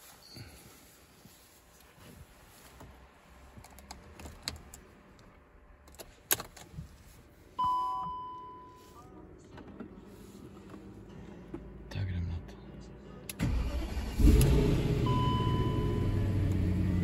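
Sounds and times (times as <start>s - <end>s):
ignition key click: 5.8s - 6.7s.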